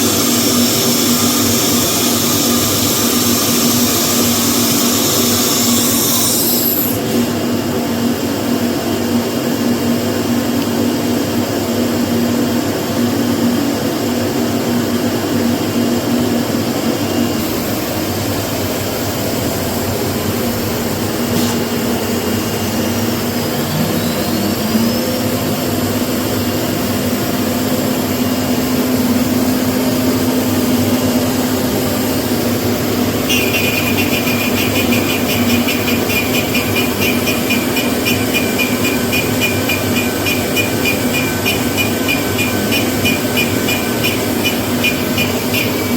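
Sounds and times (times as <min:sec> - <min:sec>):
router spindle droning: 0:22.0 - 0:27.3.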